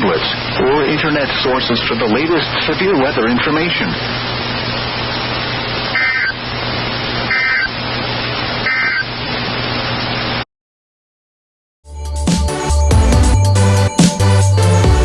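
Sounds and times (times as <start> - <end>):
receiver hiss: 0.0 - 10.4
data tone bursts: 5.9 - 6.4, 7.3 - 7.8, 8.6 - 9.1.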